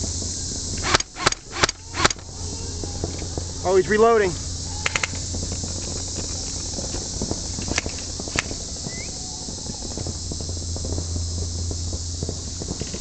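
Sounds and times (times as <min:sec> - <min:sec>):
steady high hiss: 0:00.0 - 0:13.0
airsoft gun cracks: 0:00.8 - 0:02.3, 0:04.8 - 0:05.2, 0:07.5 - 0:09.0.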